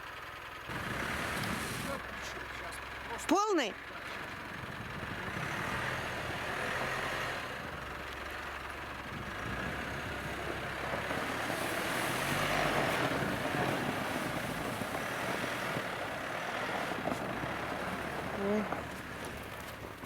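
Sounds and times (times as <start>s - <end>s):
engine running under load: 0.0s - 20.0s
tyre noise rushing: 0.7s - 2.1s, 9.1s - 20.0s.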